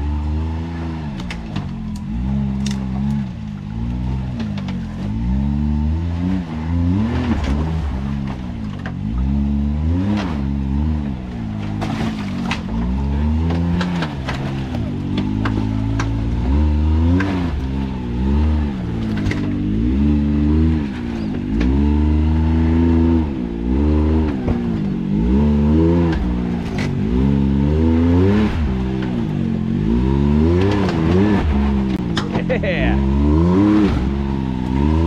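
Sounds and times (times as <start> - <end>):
utility vehicle engine revving: 0.0 - 35.0
sharp clicks and knocks: 11.6 - 17.8, 30.6 - 32.5.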